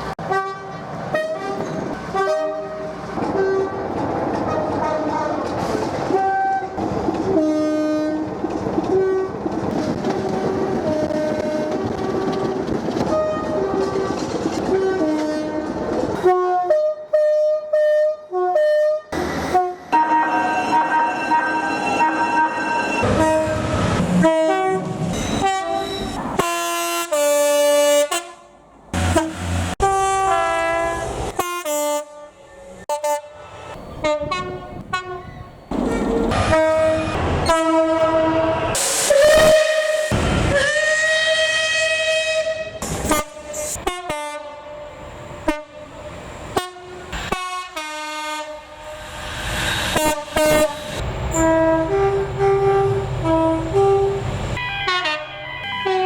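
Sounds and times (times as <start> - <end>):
train passing: 0.0 - 17.2, 19.1 - 56.0
two-tone train horns: 0.2 - 45.9, 46.5 - 49.0, 49.9 - 56.0.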